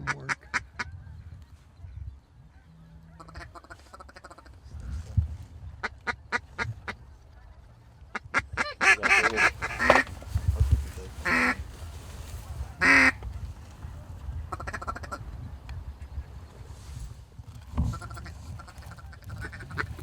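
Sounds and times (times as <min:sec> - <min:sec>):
duck quacking: 0:08.6 - 0:10.5, 0:11.2 - 0:11.6, 0:12.8 - 0:13.2, 0:14.5 - 0:15.2.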